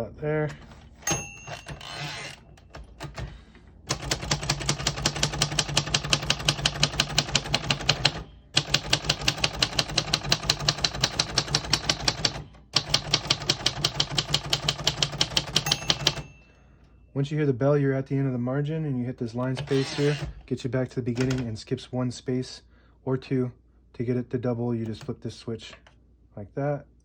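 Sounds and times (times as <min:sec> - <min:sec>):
manual typewriter typing: 0:00.6 - 0:16.3, 0:21.1 - 0:21.5.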